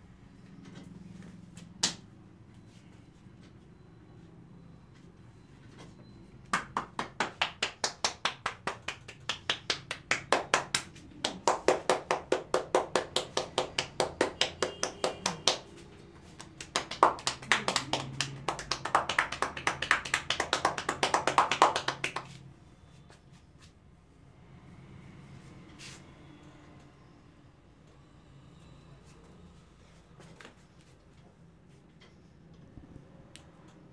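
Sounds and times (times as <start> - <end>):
hands tapping on a head: 6.5 - 22.4.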